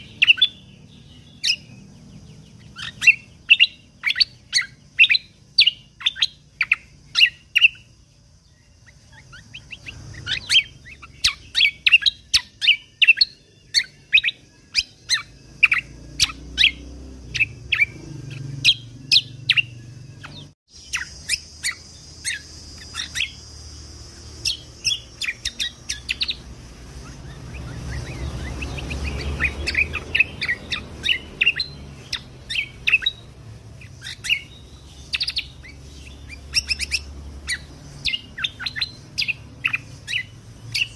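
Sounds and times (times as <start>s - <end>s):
songbird rapid chirping: 0.0s - 40.9s.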